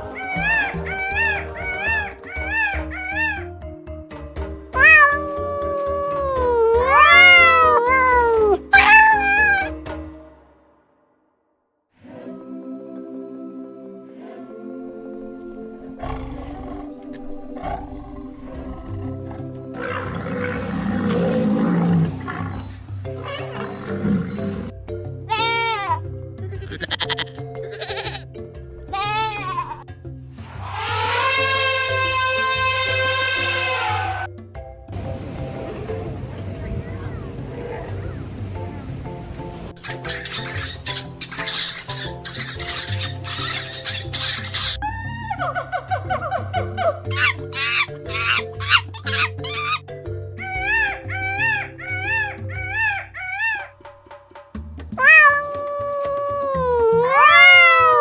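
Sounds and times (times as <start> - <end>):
background music with beat: 0.0 - 10.4, 18.6 - 41.4, 42.1 - 58.0
cat meowing: 0.1 - 3.4, 4.8 - 9.8, 25.3 - 26.0, 26.6 - 28.2, 28.9 - 29.8, 50.4 - 53.7, 55.0 - 58.0
goat bleating: 4.8 - 9.7, 25.3 - 28.2, 28.9 - 29.8, 31.0 - 34.3, 47.1 - 49.8, 55.0 - 58.0.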